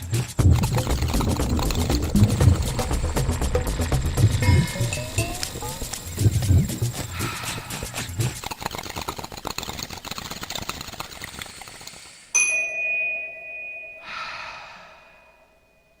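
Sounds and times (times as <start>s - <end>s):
fast clattering: 0.1s - 12.0s
bell-like ding: 12.4s - 16.0s
short breathy whoosh: 14.0s - 15.4s.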